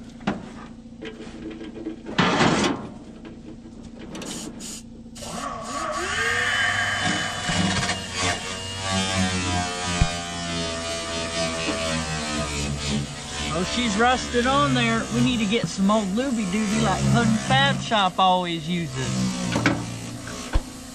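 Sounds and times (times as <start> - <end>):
steady humming tones: 0.0 - 20.9
loud metal scrape: 5.8 - 18.1.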